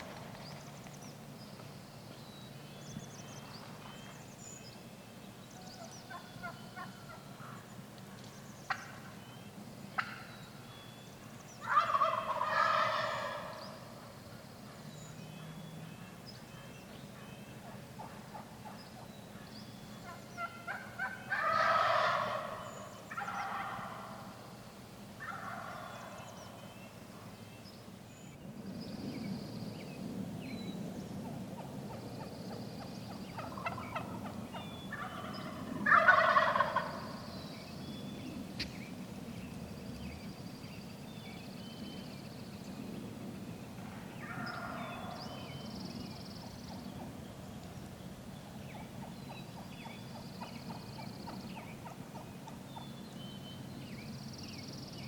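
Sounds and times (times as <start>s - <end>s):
songbirds chirping: 0.0s - 55.0s
turkey gobbling: 8.7s - 9.0s, 10.0s - 10.3s, 11.6s - 13.8s, 20.0s - 24.3s, 25.2s - 26.1s, 33.3s - 37.3s, 44.2s - 45.2s, 48.8s - 52.6s.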